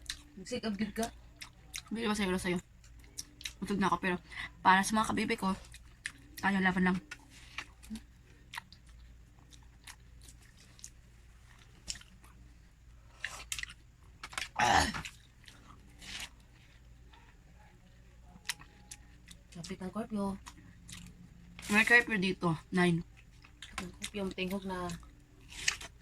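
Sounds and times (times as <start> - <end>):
chewing watermelon: 0.0 - 3.8, 5.4 - 22.1, 23.0 - 26.0.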